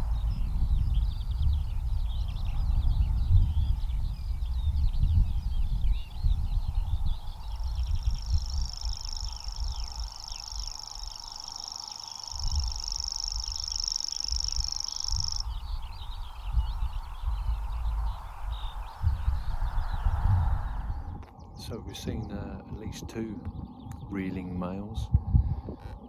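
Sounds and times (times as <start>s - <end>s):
songbirds chirping: 0.0s - 26.0s
wind on microphone: 0.0s - 26.0s
warbler reeling trill: 6.8s - 20.0s.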